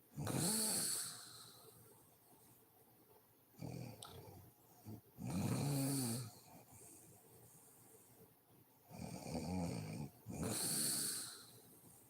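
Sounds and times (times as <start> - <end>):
woman snoring: 0.2 - 1.3, 5.2 - 6.4.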